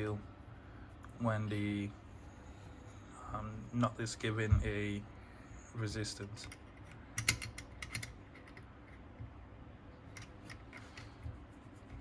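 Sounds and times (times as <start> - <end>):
small metal parts clicking: 6.4 - 8.7.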